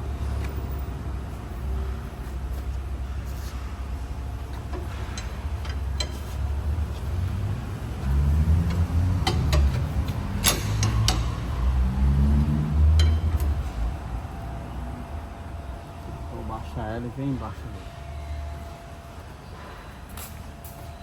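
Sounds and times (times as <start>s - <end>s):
sharp clicks and knocks: 4.5s - 7.4s, 8.0s - 11.7s, 12.4s - 13.7s.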